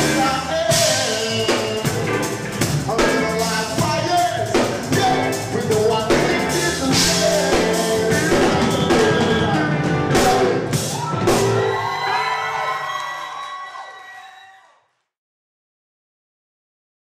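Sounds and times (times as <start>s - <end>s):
live rock band playing: 0.0s - 12.9s.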